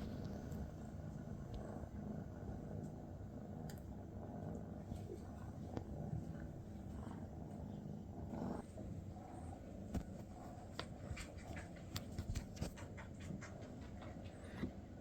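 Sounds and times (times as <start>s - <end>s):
cat purring: 0.0s - 15.0s.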